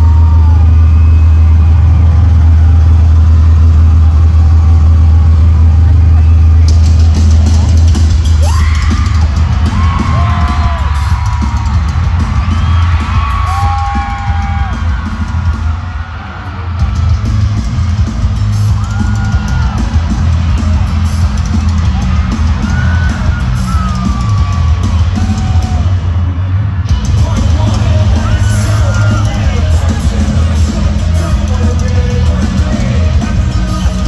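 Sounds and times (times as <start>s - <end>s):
people yelling and whooping: 0.0s - 34.0s
live rock band playing: 6.7s - 26.0s, 26.9s - 34.0s.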